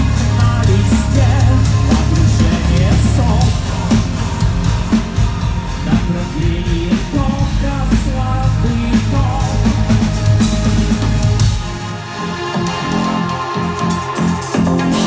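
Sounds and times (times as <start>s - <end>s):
person singing: 0.0s - 10.2s
bass guitar: 0.0s - 11.9s, 12.6s - 15.0s
drums: 0.0s - 15.0s
electric guitars: 0.0s - 15.0s.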